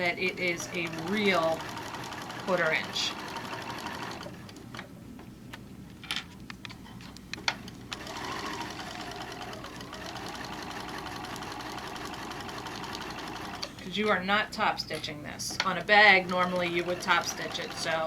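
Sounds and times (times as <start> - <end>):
sewing machine stitching: 0.0 - 4.6, 7.6 - 13.8, 15.6 - 18.0.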